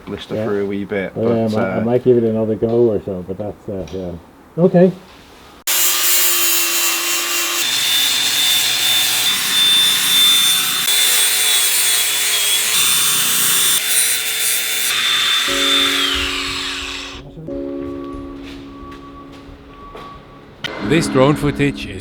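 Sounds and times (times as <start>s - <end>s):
power tool high whine: 5.7s - 17.2s
power tool scraping metal: 5.7s - 17.2s.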